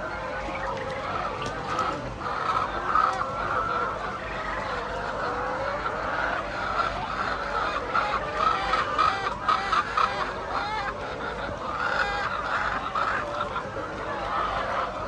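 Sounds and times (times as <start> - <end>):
hens clucking: 0.0 - 15.0.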